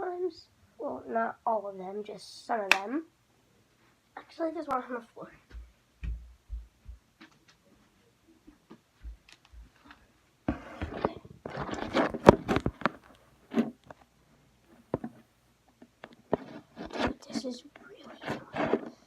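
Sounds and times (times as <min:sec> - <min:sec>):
rustling and scraping: 0:07.2 - 0:15.3, 0:16.0 - 0:19.0.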